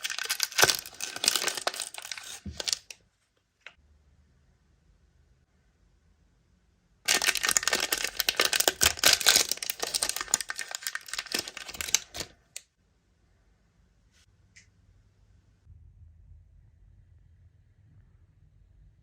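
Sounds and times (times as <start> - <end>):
toy packaging crinkling: 0.0 - 3.0, 7.1 - 12.6.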